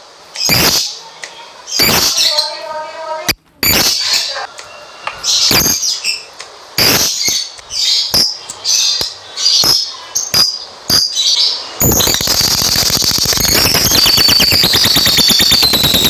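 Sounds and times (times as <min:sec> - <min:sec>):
lovebirds chirping and squeaking: 0:00.4 - 0:01.0, 0:01.7 - 0:02.7, 0:03.6 - 0:16.0
sharp clicks: 0:11.8 - 0:16.0.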